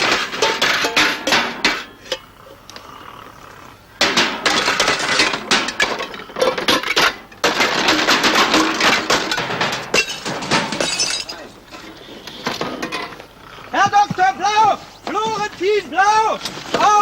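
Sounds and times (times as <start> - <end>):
rapid clattering and banging: 0.0 - 2.0, 4.0 - 11.4.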